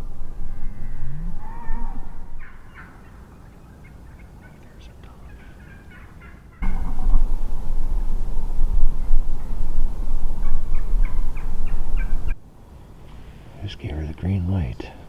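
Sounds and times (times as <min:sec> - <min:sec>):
loud rush of low noise: 0:00.0 - 0:02.8, 0:06.6 - 0:13.8
wild turkeys clucking and yelping: 0:00.0 - 0:12.4.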